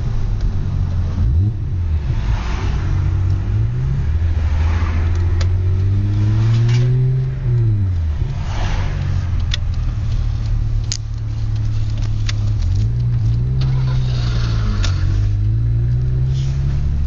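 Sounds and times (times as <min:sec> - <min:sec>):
car engine idling and revving: 0:00.0 - 0:17.0.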